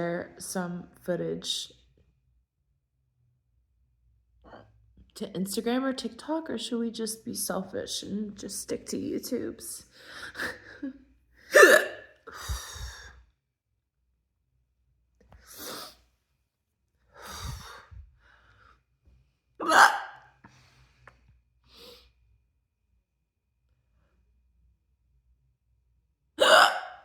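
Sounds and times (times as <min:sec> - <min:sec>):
person hiccuping: 0:11.6 - 0:12.1, 0:19.6 - 0:20.2, 0:26.4 - 0:27.0.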